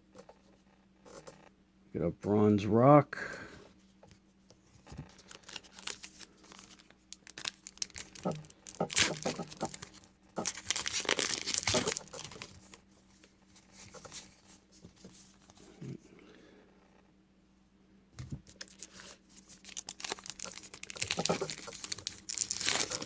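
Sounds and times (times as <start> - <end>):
handling rustles: 3.8 - 16.1, 18.2 - 23.0
foil wrapper tearing and crinkling: 5.1 - 12.8, 18.4 - 23.0.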